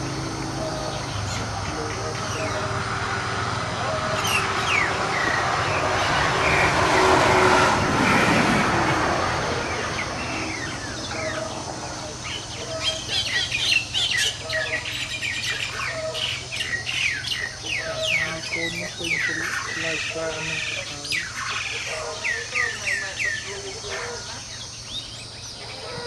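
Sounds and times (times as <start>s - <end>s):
broad rushing noise: 0.0s - 13.1s
birds chirping rapidly: 0.0s - 26.0s.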